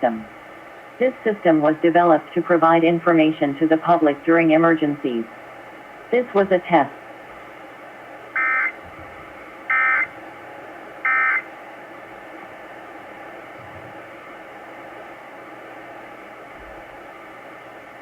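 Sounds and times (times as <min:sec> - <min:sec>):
radio hiss: 0:08.3 - 0:08.9, 0:09.6 - 0:10.3, 0:11.0 - 0:11.5.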